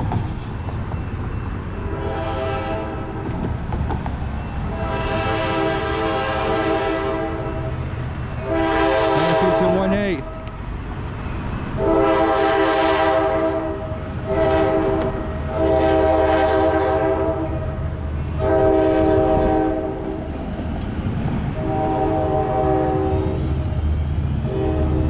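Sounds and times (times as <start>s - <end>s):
low train rumble: 0.0s - 25.0s
locomotive air horn blasts: 1.8s - 3.2s, 4.6s - 7.8s, 8.4s - 10.5s, 11.8s - 17.7s, 18.4s - 20.1s, 21.6s - 23.5s, 24.4s - 25.0s.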